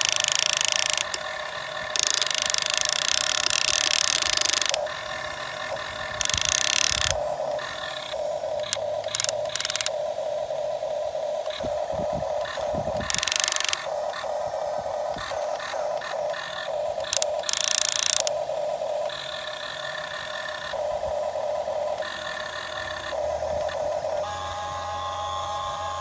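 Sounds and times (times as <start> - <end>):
electric motors whining: 0.0 - 26.0
harsh motor buzzing: 0.0 - 26.0.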